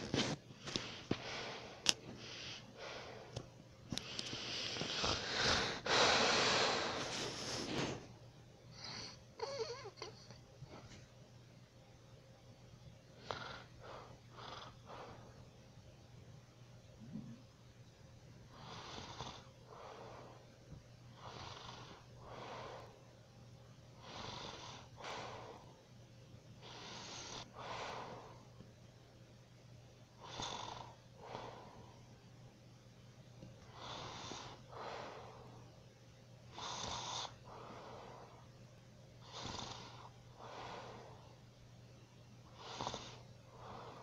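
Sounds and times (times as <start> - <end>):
steady low hum: 0.0 - 44.0
woman snoring softly: 8.8 - 10.2, 13.2 - 15.4, 18.5 - 20.4, 21.1 - 23.0, 24.0 - 25.8, 26.6 - 28.5, 30.2 - 31.9, 33.6 - 35.6, 36.5 - 38.5, 39.2 - 41.2, 42.5 - 44.0.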